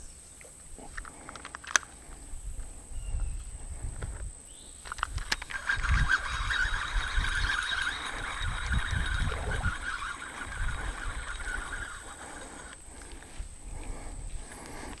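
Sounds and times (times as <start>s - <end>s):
fishing reel whirring: 4.8s - 15.0s.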